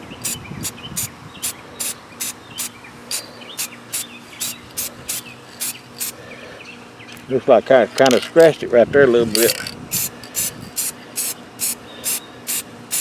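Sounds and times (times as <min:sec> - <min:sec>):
birds chirping: 0:00.0 - 0:08.6
aerosol can spraying: 0:01.0 - 0:06.2, 0:09.4 - 0:13.0.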